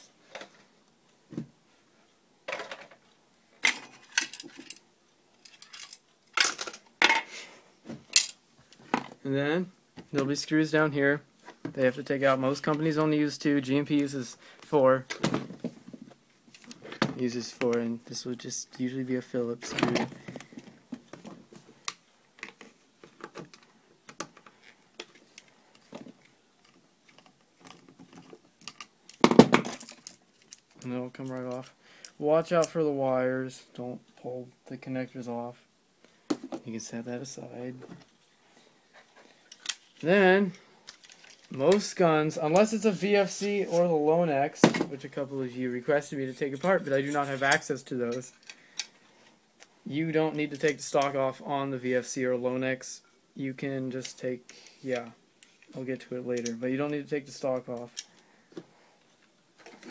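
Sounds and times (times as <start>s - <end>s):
metal parts clattering: 3.6s - 4.8s, 5.4s - 7.2s
metal screws and tools clinking: 5.4s - 6.9s, 40.9s - 41.6s.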